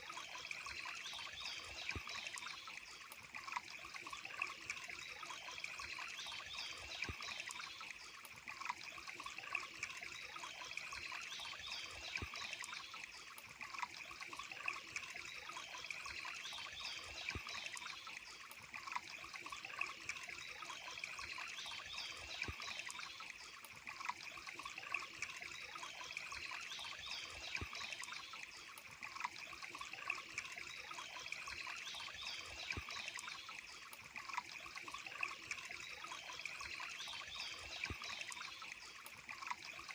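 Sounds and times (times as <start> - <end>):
small water splashes: 0.0 - 39.9
water trickling over stones: 0.0 - 39.9.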